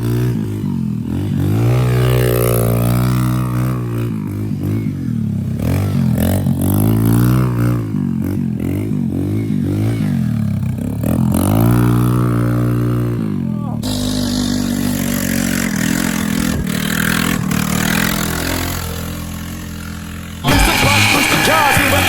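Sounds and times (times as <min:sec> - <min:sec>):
dirt bike engine revving: 0:00.0 - 0:22.0.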